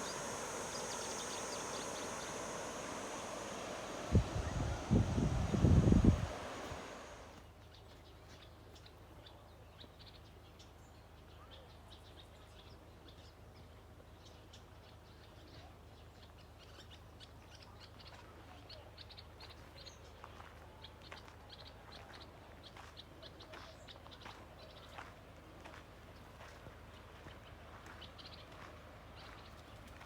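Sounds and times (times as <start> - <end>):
small birds chirping: 0.0 - 7.4.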